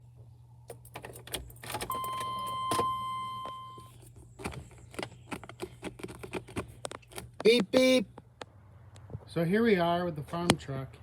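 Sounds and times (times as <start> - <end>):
low steady hum: 0.0 - 11.0
high-pitched beep: 1.9 - 3.9
clicking and rattling: 4.1 - 7.4.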